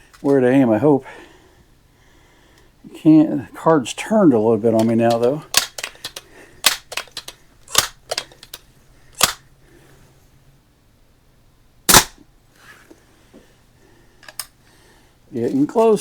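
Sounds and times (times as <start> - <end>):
rifle handling clicks: 4.7 - 9.4, 14.2 - 14.6
pellet rifle shot crack: 4.8 - 7.1, 7.7 - 8.2, 9.2 - 9.4, 11.9 - 12.2.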